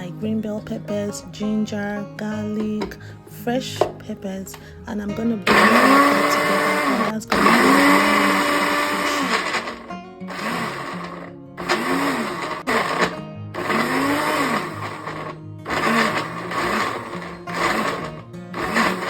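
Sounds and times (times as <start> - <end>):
background music: 0.0 - 19.0
blender pulsing: 5.5 - 19.0.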